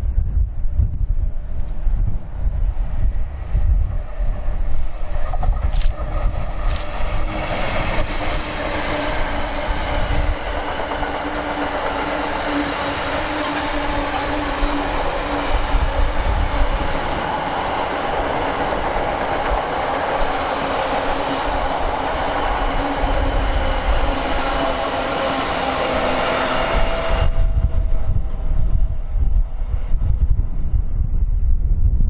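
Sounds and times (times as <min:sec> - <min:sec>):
train wheels rumbling on rail: 0:00.0 - 0:32.0
wind buffeting microphone: 0:00.0 - 0:32.0.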